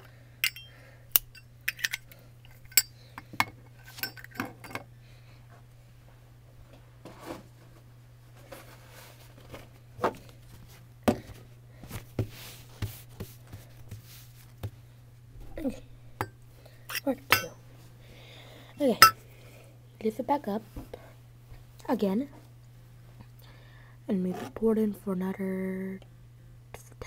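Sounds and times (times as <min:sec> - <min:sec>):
low hum: 0:00.0 - 0:03.1.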